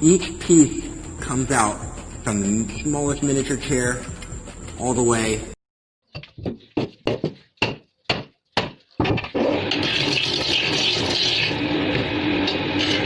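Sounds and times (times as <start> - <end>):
sharp knocks on wood: 6.2 - 9.2.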